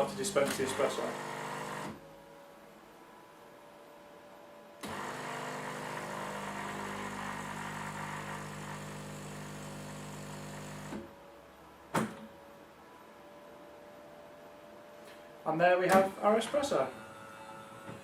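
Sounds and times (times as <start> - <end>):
coffee machine pump humming: 0.0 - 2.0, 4.8 - 11.0.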